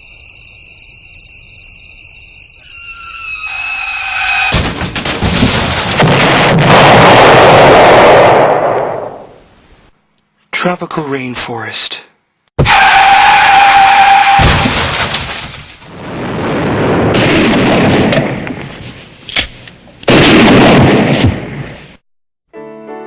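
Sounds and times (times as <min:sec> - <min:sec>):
high ringing tone: 0:00.0 - 0:04.0
explosion blasts: 0:04.5 - 0:09.4, 0:14.4 - 0:18.8, 0:20.1 - 0:21.8
sharp crack: 0:04.5 - 0:09.4, 0:19.3 - 0:21.8.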